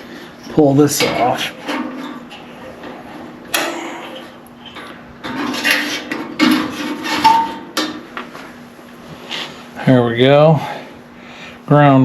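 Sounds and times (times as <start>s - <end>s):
metal clinks and knocks: 5.3s - 8.0s.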